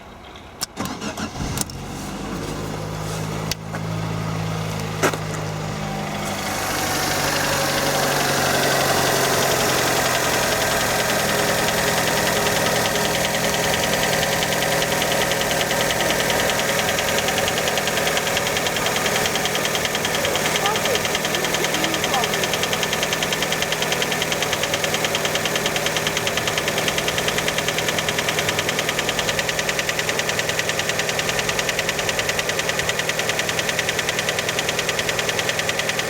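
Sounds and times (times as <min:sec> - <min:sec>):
car engine idling: 0:00.0 - 0:36.0
rapid even engine knock: 0:06.5 - 0:36.0
person asking a question: 0:20.4 - 0:22.6.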